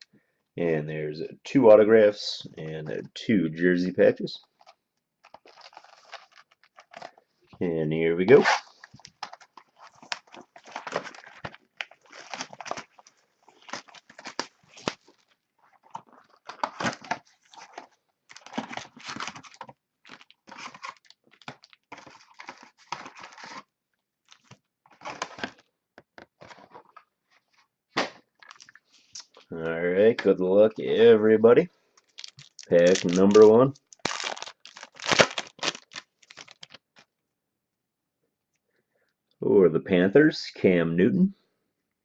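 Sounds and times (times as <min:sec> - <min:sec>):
plastic shrink-wrap tearing: 0:05.2 - 0:07.1, 0:08.4 - 0:23.7, 0:32.0 - 0:36.8.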